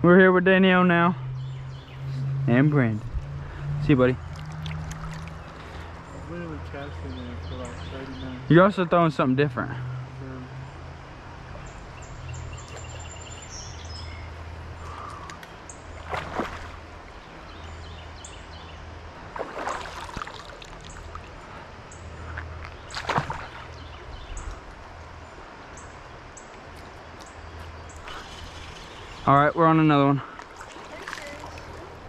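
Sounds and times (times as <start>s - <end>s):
river water running: 0.6s - 32.0s
water sloshing splashes: 4.2s - 6.0s, 15.9s - 17.3s, 19.2s - 21.4s, 22.8s - 23.9s, 30.4s - 32.0s.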